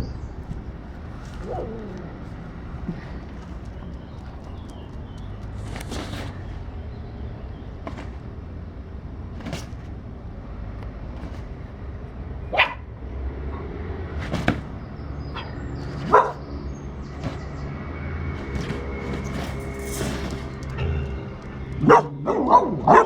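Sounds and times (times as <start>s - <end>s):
dog yips: 12.5s - 12.8s, 15.3s - 16.4s
low rumble: 17.0s - 23.0s.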